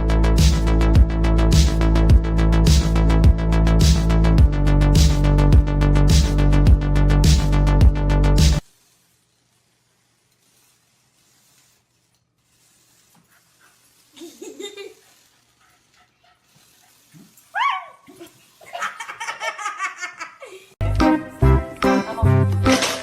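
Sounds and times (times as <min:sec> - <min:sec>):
dog whining and yelping: 0:17.5 - 0:18.3.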